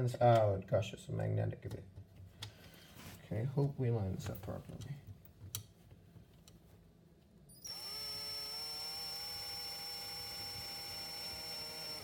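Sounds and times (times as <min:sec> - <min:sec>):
electric drill whining: 0:07.6 - 0:12.0.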